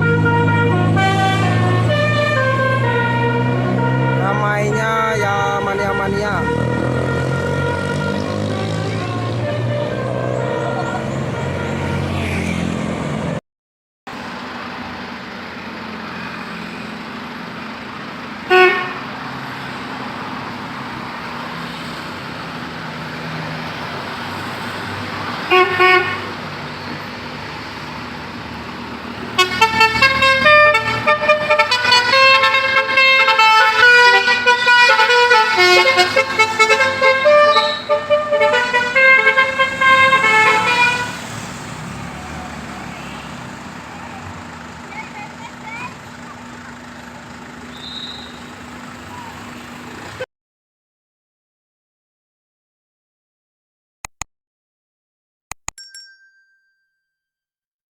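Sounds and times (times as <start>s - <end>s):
musical car horn melody: 0.0s - 12.4s, 18.5s - 19.1s, 25.5s - 26.4s, 29.2s - 41.3s
road and engine noise: 0.0s - 13.4s, 14.1s - 50.3s.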